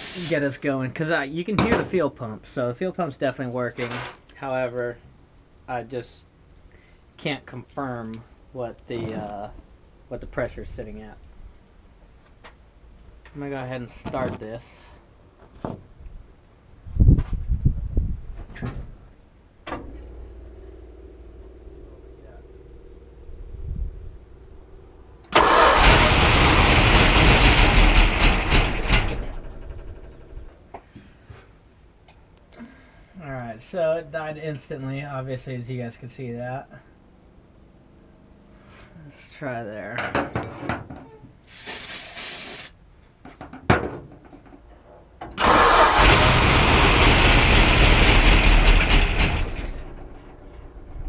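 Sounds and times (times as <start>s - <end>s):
car engine firing and running: 25.3s - 30.5s, 45.4s - 51.0s.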